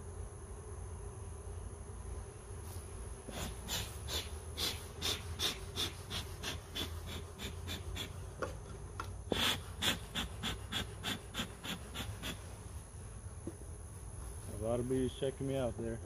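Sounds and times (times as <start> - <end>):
steady low hum: 0.0 - 16.0
bellows puffing: 9.3 - 12.5.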